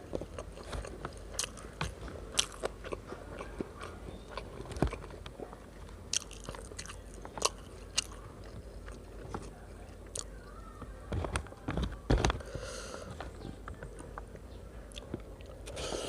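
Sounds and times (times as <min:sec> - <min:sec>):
person chewing food: 0:00.0 - 0:10.3
sharp crunchy clicks: 0:00.0 - 0:12.4.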